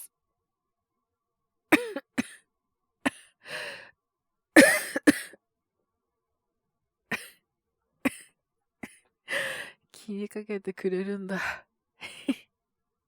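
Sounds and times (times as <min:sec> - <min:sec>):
young man coughing: 0:01.8 - 0:02.4, 0:04.6 - 0:05.3, 0:07.1 - 0:07.3, 0:08.1 - 0:09.0.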